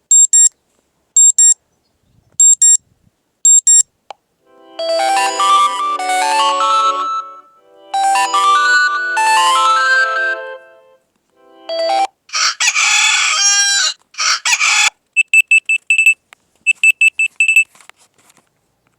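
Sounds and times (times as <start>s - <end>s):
synth ringtone melody: 4.5s - 12.2s
recorded rooster crowing: 12.3s - 14.9s.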